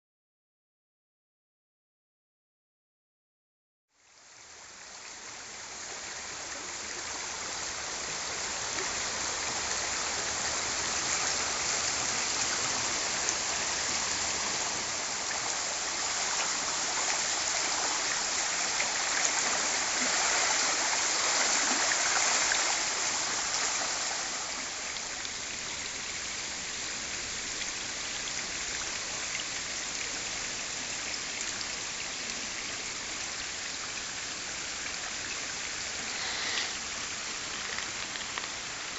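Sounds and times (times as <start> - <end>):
heavy rain downpour: 4.0 - 38.9
flooding stream rushing: 4.9 - 38.9.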